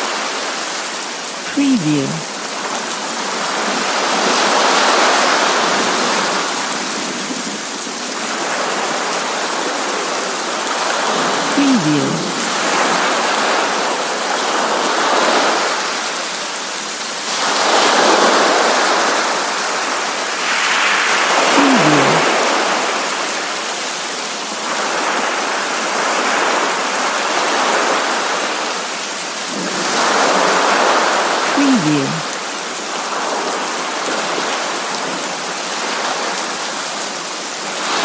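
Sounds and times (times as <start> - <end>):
person speaking watermark: 1.5 - 2.3, 11.6 - 12.4, 21.6 - 22.2, 31.6 - 32.3.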